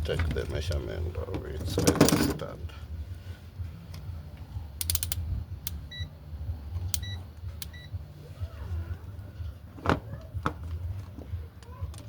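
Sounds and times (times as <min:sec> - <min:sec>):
steady low hum: 0:00.0 - 0:11.7
multimeter clicks: 0:04.8 - 0:05.8.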